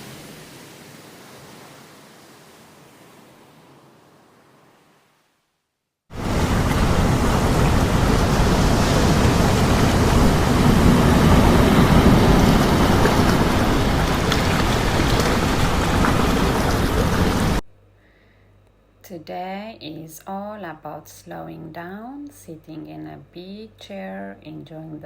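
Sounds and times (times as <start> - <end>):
water rushing: 0.0 - 3.4, 6.1 - 17.6.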